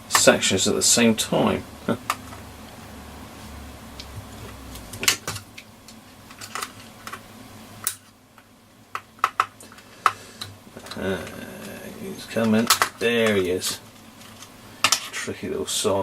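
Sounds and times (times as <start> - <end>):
tool clicks and taps: 8.9 - 10.5.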